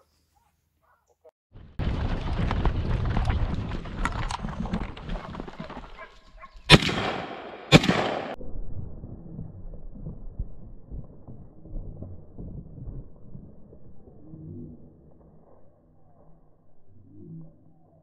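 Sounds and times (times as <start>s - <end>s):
gunshots: 6.7s - 8.4s.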